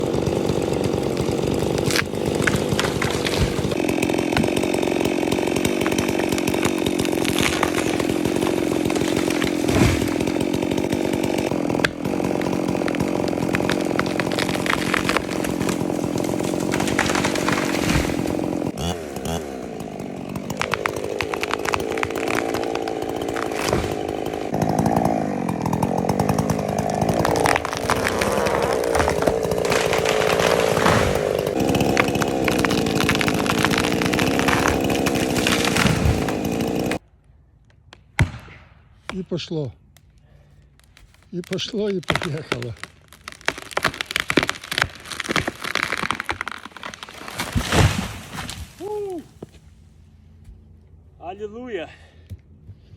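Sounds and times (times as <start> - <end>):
chainsaw running at high throttle: 0.0 - 37.0
sharp cracks and knocks: 1.2 - 18.8, 20.4 - 24.5, 26.8 - 37.0, 37.6 - 39.2, 39.9 - 49.6.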